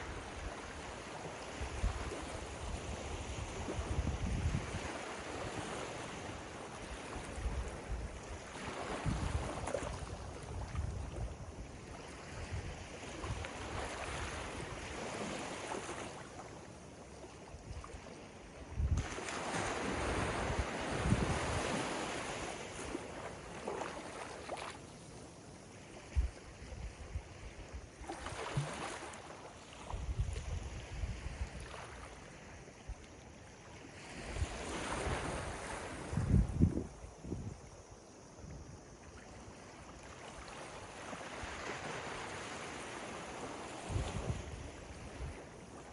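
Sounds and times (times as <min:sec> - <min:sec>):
ocean waves breaking on beach: 0:00.0 - 0:45.9
wind buffeting microphone: 0:01.5 - 0:05.0, 0:07.2 - 0:11.6, 0:18.7 - 0:19.2, 0:19.8 - 0:22.4, 0:29.9 - 0:31.7, 0:34.2 - 0:37.9.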